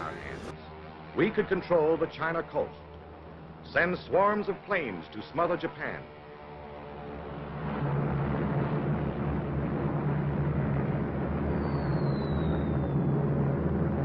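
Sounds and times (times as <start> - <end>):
propeller aircraft engines droning: 0.0 - 14.0
faint falling whistle: 11.5 - 13.1.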